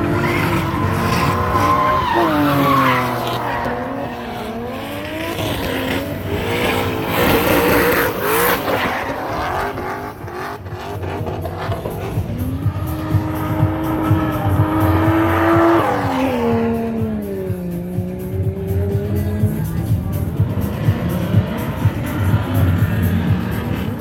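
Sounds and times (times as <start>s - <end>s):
tires squealing and skidding: 0.0s - 16.9s
car engines revving: 0.0s - 24.0s.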